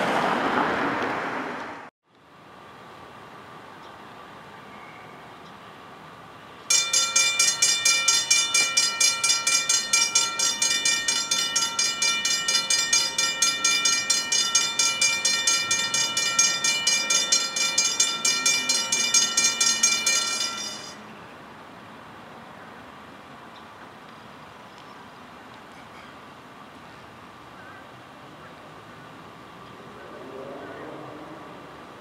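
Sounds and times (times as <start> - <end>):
crossing bell ringing rapidly: 6.7 - 21.0.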